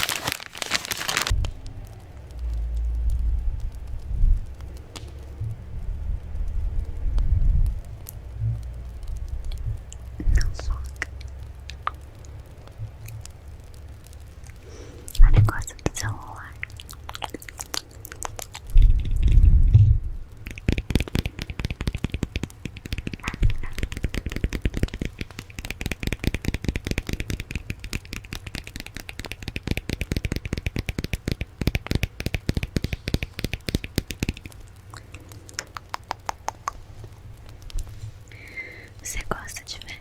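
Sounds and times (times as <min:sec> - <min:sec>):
loud low rumble: 0:01.3 - 0:10.8, 0:18.8 - 0:20.4
fast crisp tapping: 0:20.3 - 0:40.0.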